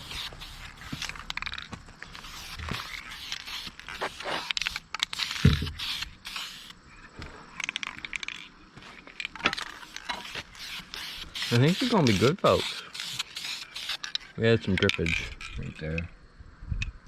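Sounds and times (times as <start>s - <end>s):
spray paint can hissing: 0.0s - 6.8s, 9.6s - 14.3s.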